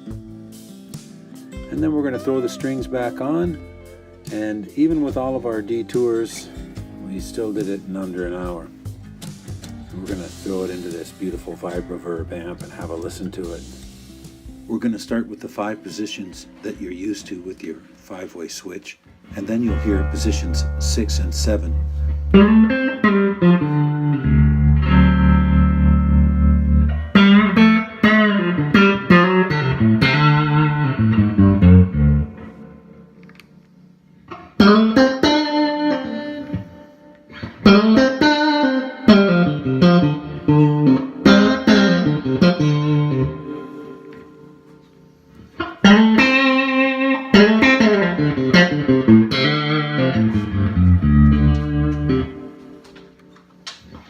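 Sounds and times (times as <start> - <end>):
electric guitar chords and notes: 0.0 - 18.0, 19.1 - 54.0.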